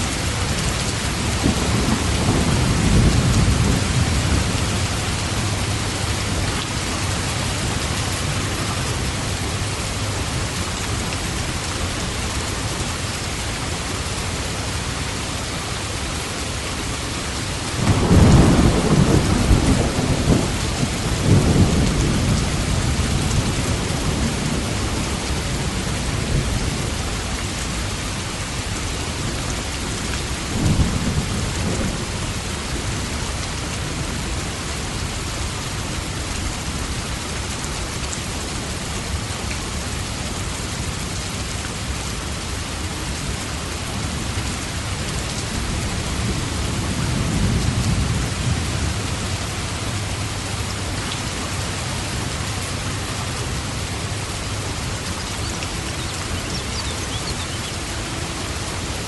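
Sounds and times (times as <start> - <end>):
heavy rain: 0.0 - 59.0
thunder rumbling: 0.1 - 10.5, 17.8 - 26.9, 45.5 - 51.0.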